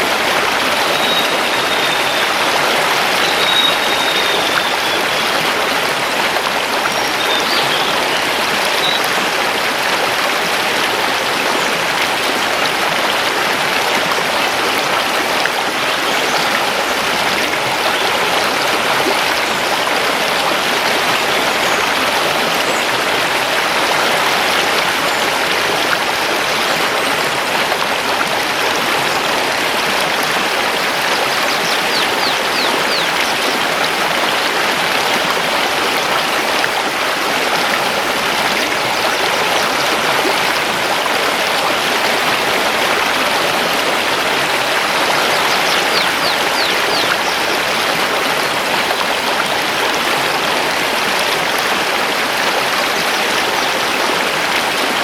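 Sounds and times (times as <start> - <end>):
river rushing over stones: 0.0 - 55.0
faint high bird chirps: 3.2 - 5.2.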